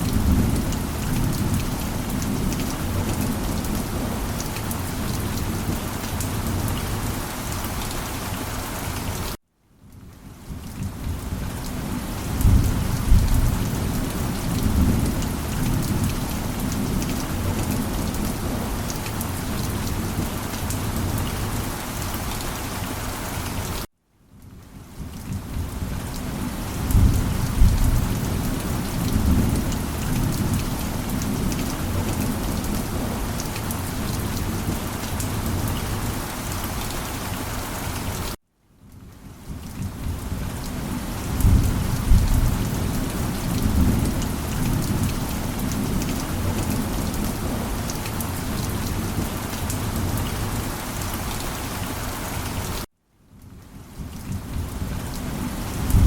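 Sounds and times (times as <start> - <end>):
steady rain: 0.0 - 56.0
low rolling thunder: 10.5 - 18.7, 25.3 - 33.4, 39.8 - 50.6, 54.3 - 56.0.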